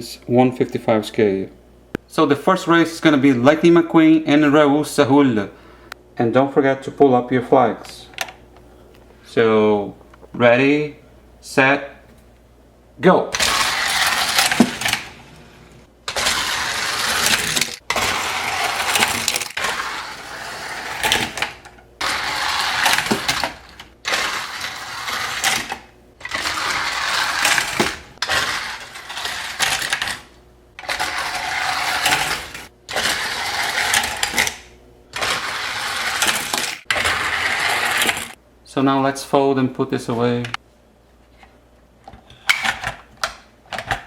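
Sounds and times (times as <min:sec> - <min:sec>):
toy cars rattling on plastic track: 0:13.4 - 0:15.2, 0:16.1 - 0:38.4.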